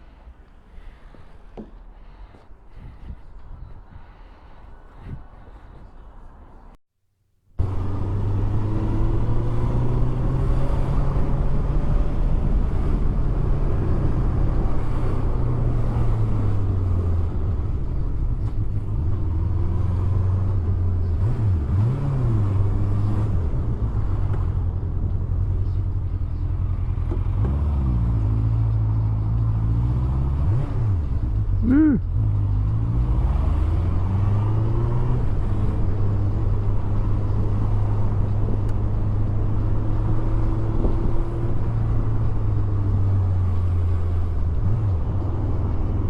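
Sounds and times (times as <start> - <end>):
wind noise: 2.2 - 6.7.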